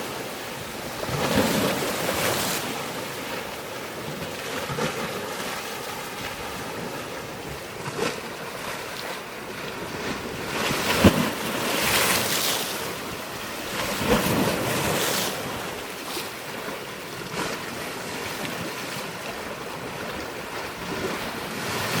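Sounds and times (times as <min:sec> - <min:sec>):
wind: 0:00.0 - 0:22.0.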